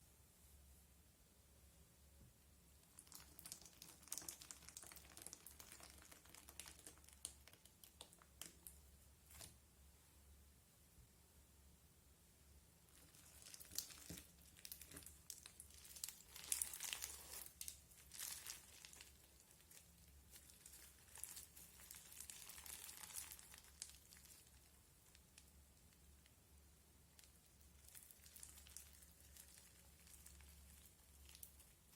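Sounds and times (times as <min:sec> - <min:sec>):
slime crackling and popping: 0:02.8 - 0:09.6, 0:12.9 - 0:26.4, 0:27.1 - 0:31.9.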